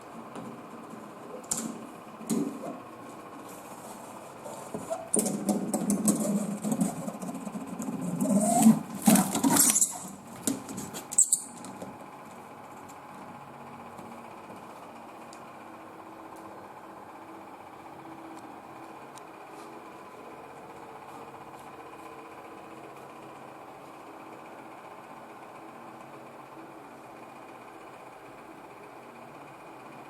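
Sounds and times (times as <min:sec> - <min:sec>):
cat scrabbling and scratching: 0:03.8 - 0:11.8.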